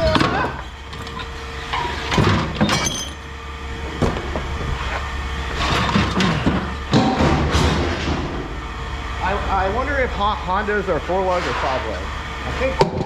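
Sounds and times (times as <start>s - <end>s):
scrap metal clanking: 0.0s - 8.4s
engine rumble: 0.0s - 13.0s.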